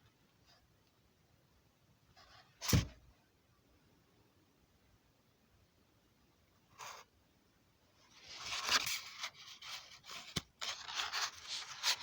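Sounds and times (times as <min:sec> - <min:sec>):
book page rustling: 0:08.2 - 0:12.0.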